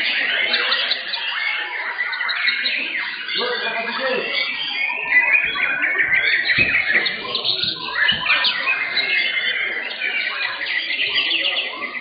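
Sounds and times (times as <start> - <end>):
birds singing: 0.0 - 12.0
background voices: 5.0 - 10.6.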